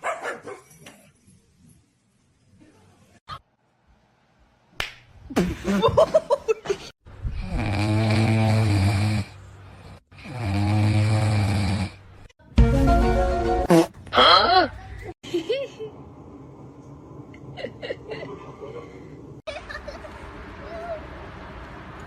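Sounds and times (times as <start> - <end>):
loud snoring: 7.4 - 12.1.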